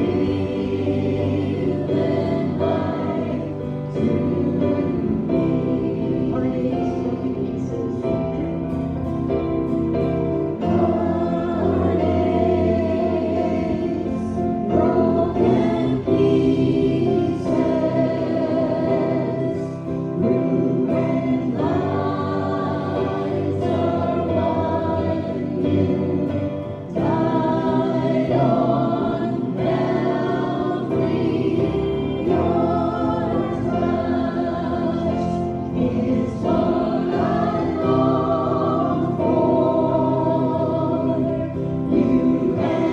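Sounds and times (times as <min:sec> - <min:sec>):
group singing gospel song: 0:00.0 - 0:42.9.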